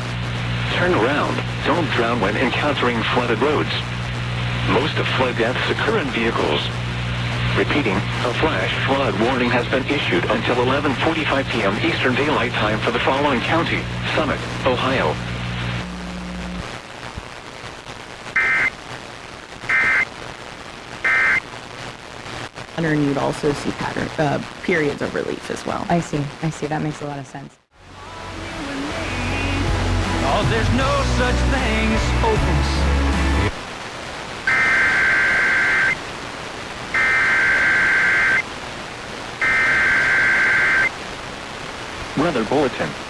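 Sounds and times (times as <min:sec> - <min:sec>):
radio hiss: 0:00.0 - 0:27.5, 0:28.2 - 0:43.0
faint hiss: 0:33.5 - 0:43.0
warbling two-tone data signal: 0:37.0 - 0:38.4, 0:39.4 - 0:40.9.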